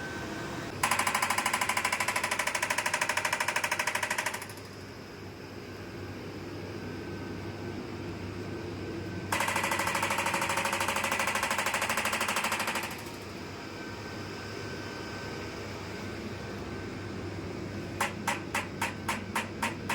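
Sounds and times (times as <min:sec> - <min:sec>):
steady low hum: 0:04.7 - 0:19.9
fast train of clicks: 0:18.0 - 0:19.9.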